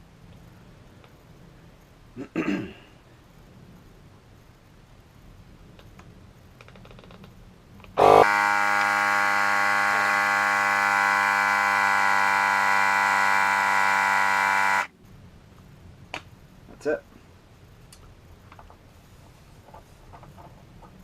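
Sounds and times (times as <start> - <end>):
compact inflator buzzing: 8.0 - 14.9.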